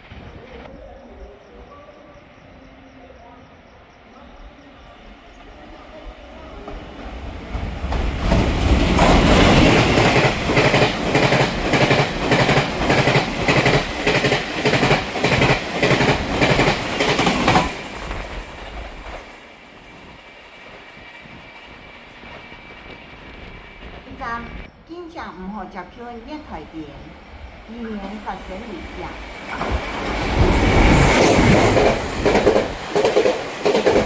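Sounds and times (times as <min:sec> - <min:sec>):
train passing at speed: 0:00.0 - 0:24.8, 0:25.4 - 0:34.0
wheels clacking over rail joints: 0:07.5 - 0:24.4, 0:27.8 - 0:34.0.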